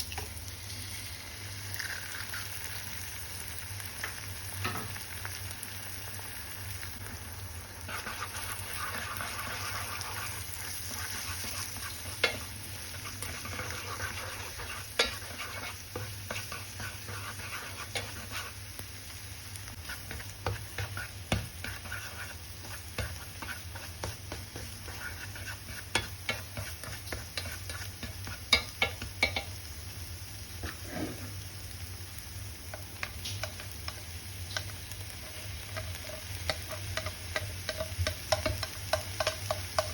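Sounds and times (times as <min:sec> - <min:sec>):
rice sizzling in a pan: 0:00.0 - 0:39.9
spatula scraping: 0:07.8 - 0:18.6, 0:19.7 - 0:29.4, 0:30.6 - 0:31.4, 0:32.7 - 0:39.9
spatula clicking against pan: 0:25.9 - 0:29.5, 0:35.7 - 0:39.9.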